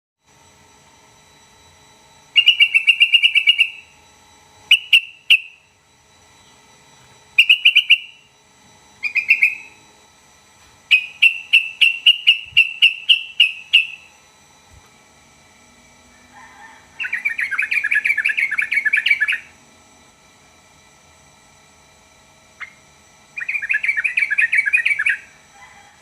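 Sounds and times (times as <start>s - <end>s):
bird chattering calls: 2.4s - 3.8s, 7.4s - 8.2s, 9.0s - 9.8s, 10.9s - 14.1s, 17.0s - 19.5s, 23.4s - 25.3s.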